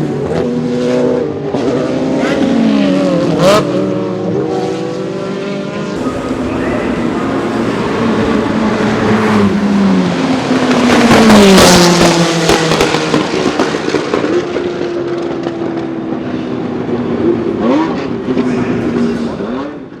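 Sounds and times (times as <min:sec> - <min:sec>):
race car engine passing: 0:06.0 - 0:13.3.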